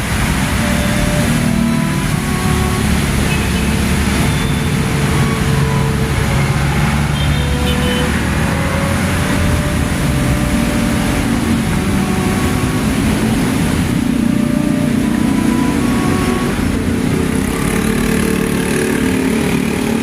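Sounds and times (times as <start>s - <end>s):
tyres on road: 0.0s - 20.0s
vehicle engines: 0.0s - 20.0s.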